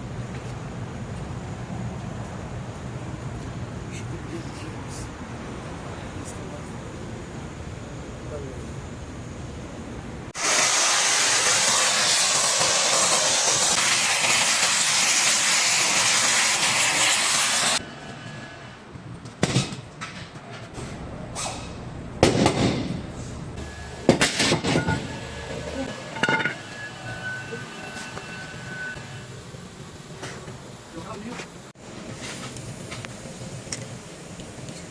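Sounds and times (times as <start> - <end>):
pressurised air hissing: 10.4 - 17.8.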